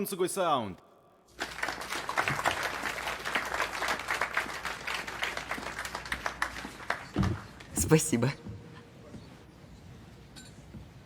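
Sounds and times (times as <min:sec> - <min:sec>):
audience applauding: 0:01.3 - 0:07.7.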